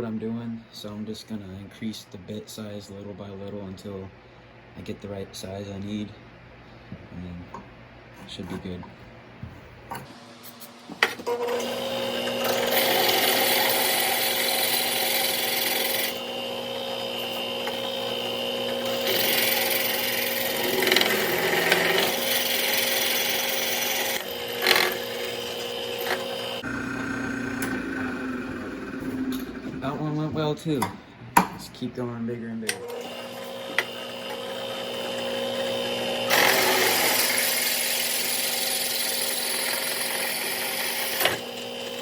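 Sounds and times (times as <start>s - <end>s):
drill press motor humming: 10.9s - 29.8s, 32.7s - 42.0s
drill bit grinding into metal: 11.3s - 27.9s, 32.7s - 42.0s.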